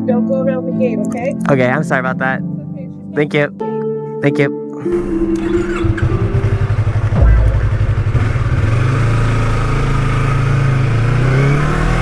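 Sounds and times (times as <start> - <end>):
motorcycle engine accelerating: 4.9 - 12.0.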